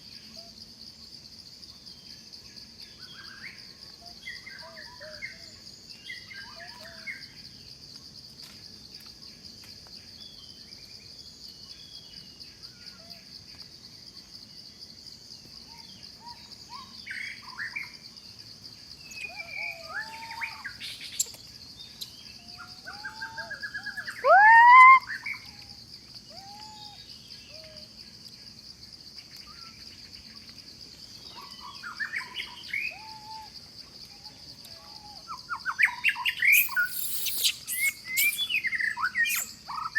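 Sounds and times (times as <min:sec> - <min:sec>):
bird calls and chirps: 0:02.9 - 0:07.3, 0:18.9 - 0:27.9, 0:29.2 - 0:39.9
high-pitched insect drone: 0:34.2 - 0:39.9.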